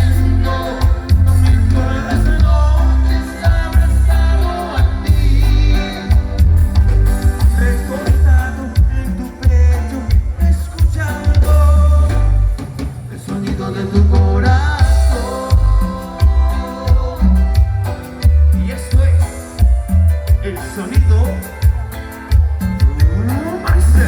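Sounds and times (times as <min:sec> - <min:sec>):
pulsing bass line: 0:00.0 - 0:12.6, 0:14.1 - 0:24.0
person singing: 0:00.0 - 0:19.7.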